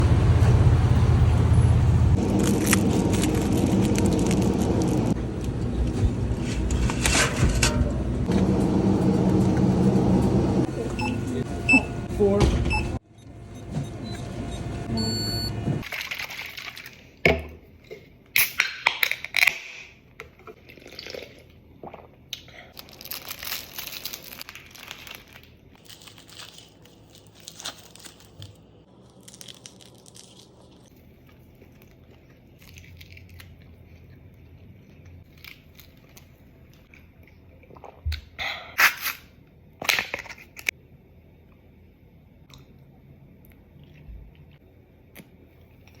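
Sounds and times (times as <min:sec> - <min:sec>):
plastic packaging crinkling: 0:02.2 - 0:05.2, 0:22.7 - 0:33.6, 0:35.3 - 0:36.8
chewing and biting: 0:29.1 - 0:38.0.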